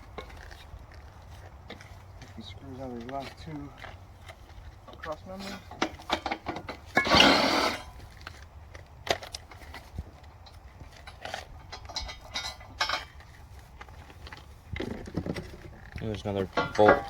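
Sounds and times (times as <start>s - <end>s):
tools and metal parts rattling: 3.1s - 8.4s, 9.1s - 17.0s
loud scrape: 7.0s - 8.0s.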